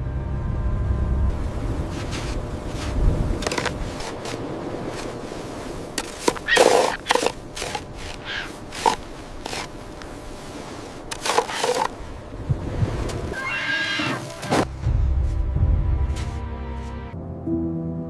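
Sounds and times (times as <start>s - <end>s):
animal squawking: 6.4s - 7.1s, 8.2s - 8.6s, 13.4s - 14.3s
animal pitched call: 8.2s - 8.6s, 13.3s - 14.3s.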